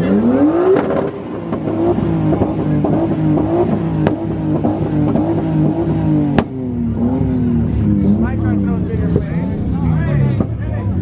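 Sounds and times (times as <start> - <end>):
car engine crackling on rev limiter: 0.0 - 11.0
exhaust backfire bangs: 0.7 - 9.4.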